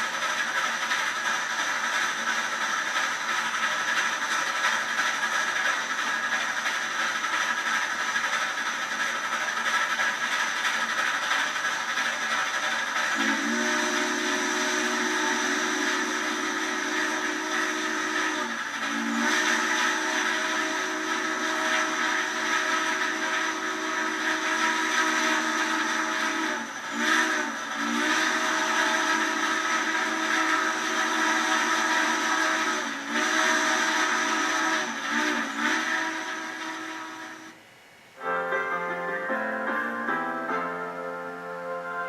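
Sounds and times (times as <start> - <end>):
train whistle chord: 13.0 - 37.6, 38.2 - 42.0.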